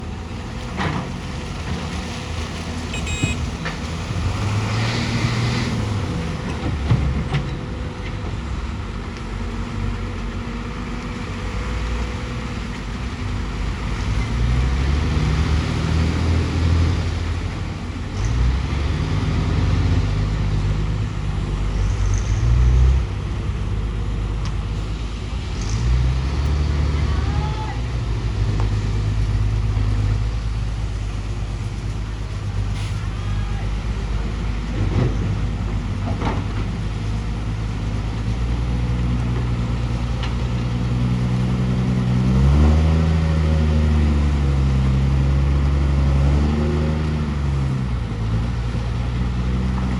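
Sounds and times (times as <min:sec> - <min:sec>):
excavator diesel engine running: 0:00.0 - 0:49.9
clunks: 0:34.7 - 0:37.2.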